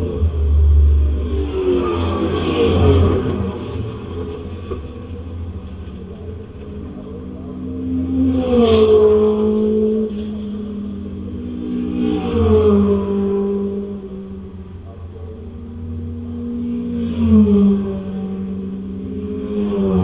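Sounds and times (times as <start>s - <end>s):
car engine accelerating and shifting gear: 0.0s - 20.0s.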